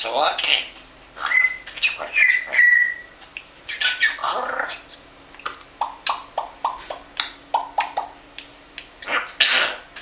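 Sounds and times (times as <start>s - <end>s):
parrot talking: 0.0s - 3.1s, 3.7s - 5.0s, 9.0s - 9.9s
parrot making sharp clicks: 5.4s - 9.1s.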